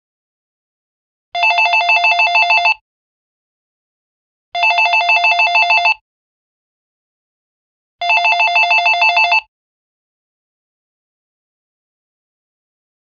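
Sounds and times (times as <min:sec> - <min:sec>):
telephone warbling ringtone: 0:01.4 - 0:02.8, 0:04.6 - 0:06.0, 0:08.0 - 0:09.5.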